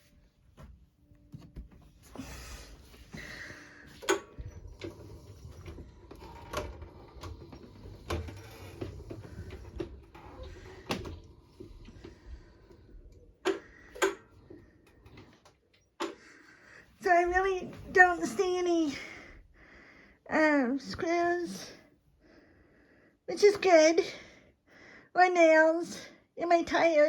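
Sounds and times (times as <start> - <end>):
wheelchair electric motors running: 2.0 - 15.6.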